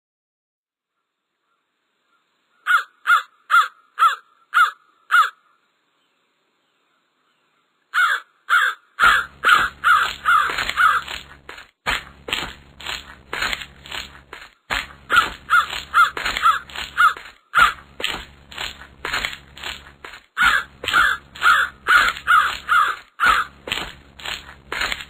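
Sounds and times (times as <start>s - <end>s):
crow cawing: 2.6s - 5.6s, 7.9s - 11.3s, 15.1s - 17.9s, 20.4s - 23.6s
low background rumble: 9.1s - 25.0s.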